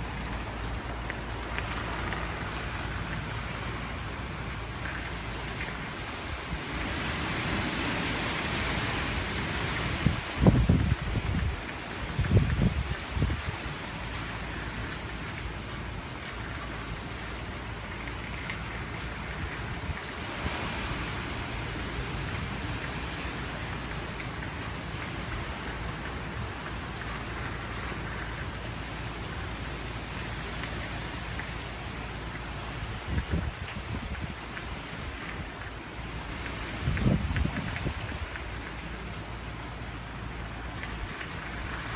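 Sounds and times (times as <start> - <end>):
heavy rain hissing: 0.0 - 41.9
wind: 0.0 - 41.9.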